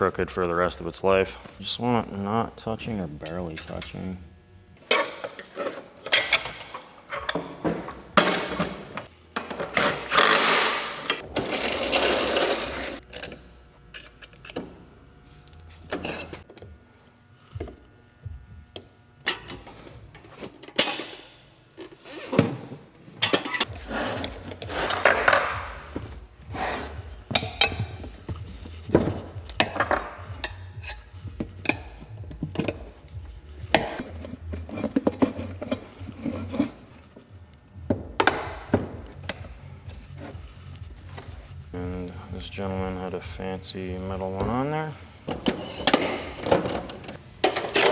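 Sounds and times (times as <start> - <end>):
rasping scraping: 9.8 - 14.5, 23.6 - 37.4, 38.2 - 42.7
hand tools clinking on metal: 13.0 - 16.4.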